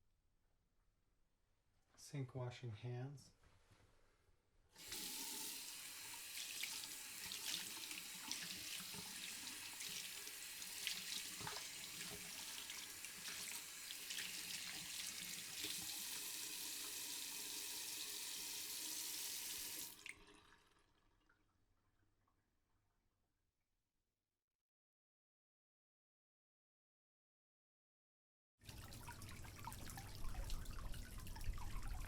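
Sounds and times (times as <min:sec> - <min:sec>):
tap water running into sink: 0:04.8 - 0:20.7, 0:28.7 - 0:32.0.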